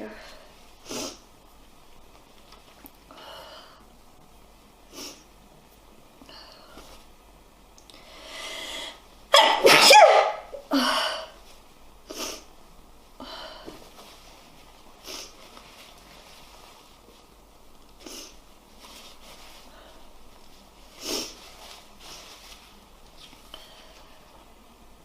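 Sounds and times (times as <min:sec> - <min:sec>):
man sneezing: 0:09.3 - 0:10.5
sniffs: 0:20.9 - 0:22.3.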